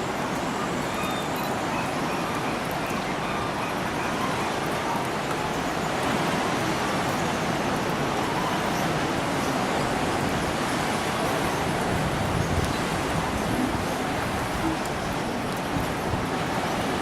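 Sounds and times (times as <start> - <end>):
steady outdoor rushing noise: 0.0 - 17.0.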